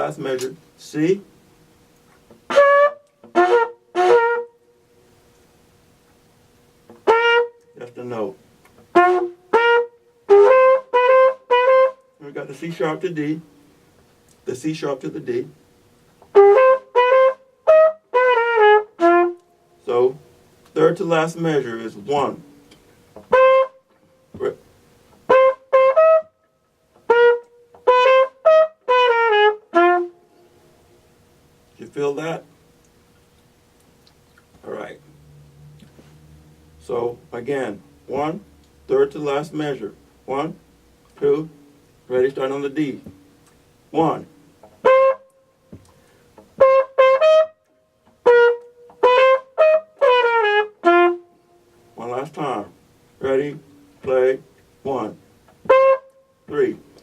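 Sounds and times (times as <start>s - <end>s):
flugelhorn playing short notes: 2.5s - 4.7s, 7.0s - 13.5s, 16.3s - 20.2s, 23.3s - 24.7s, 25.3s - 30.6s, 44.0s - 45.5s, 46.6s - 57.0s.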